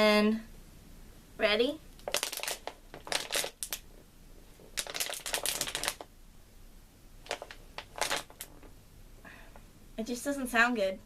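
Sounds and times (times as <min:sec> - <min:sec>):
plastic bottle crackling: 0:02.0 - 0:06.1, 0:07.2 - 0:08.8.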